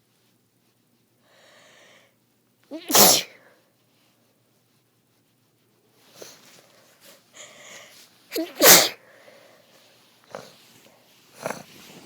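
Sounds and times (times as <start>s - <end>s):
breathy inhale: 1.2s - 2.2s, 7.3s - 8.0s, 9.0s - 10.5s
woman sneezing: 2.7s - 3.4s, 8.3s - 9.0s.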